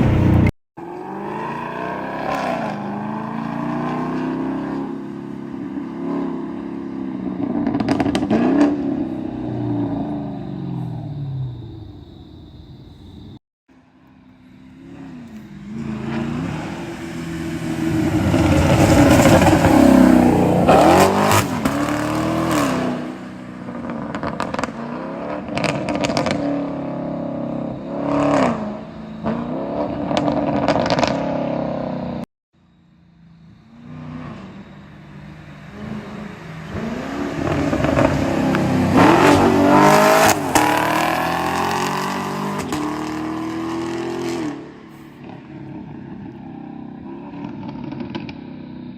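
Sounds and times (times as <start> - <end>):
exhaust crackles and pops: 7.4 - 8.8, 23.7 - 26.4, 30.0 - 31.3, 47.1 - 48.7
car engine revving past: 14.7 - 32.0, 35.4 - 48.4.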